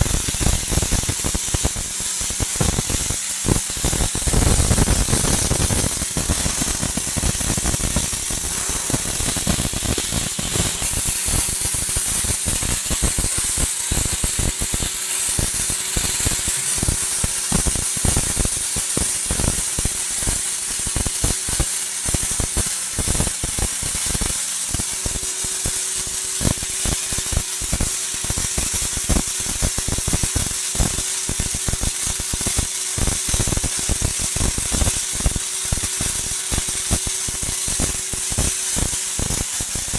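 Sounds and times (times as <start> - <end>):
welding arc crackle and hiss: 0.0 - 39.9.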